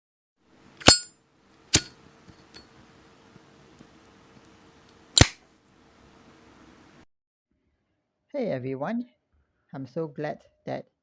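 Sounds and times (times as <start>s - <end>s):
lighter lid clicking: 1.7s - 2.6s, 5.2s - 5.4s.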